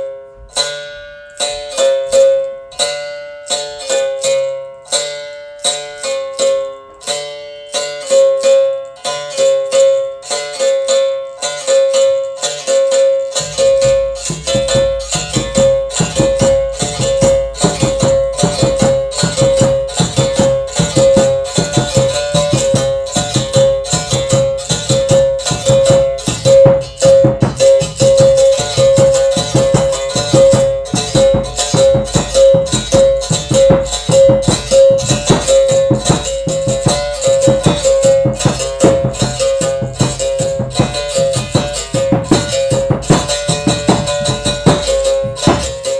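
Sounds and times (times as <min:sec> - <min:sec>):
berimbau twanging rhythm: 0:00.6 - 0:45.9
shaker rattling: 0:10.3 - 0:45.9.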